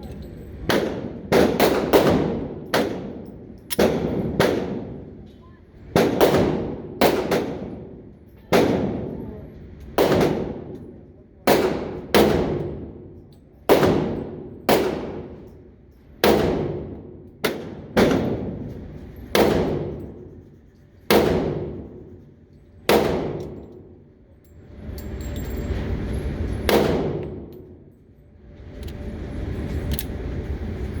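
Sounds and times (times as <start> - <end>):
pistol shots: 0.6 - 5.1, 5.9 - 9.2, 10.0 - 10.8, 11.4 - 13.1, 13.7 - 15.5, 16.2 - 18.7, 19.3 - 20.2, 21.1 - 22.0, 22.9 - 23.9, 26.7 - 27.6
low rumbling noise: 24.6 - 31.0.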